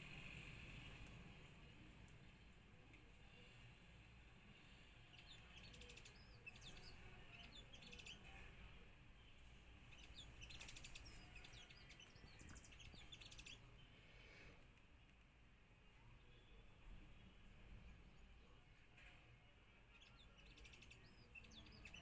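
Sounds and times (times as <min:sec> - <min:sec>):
sunbird chirping and trilling: 0:05.1 - 0:08.4, 0:09.8 - 0:14.0, 0:19.9 - 0:22.0.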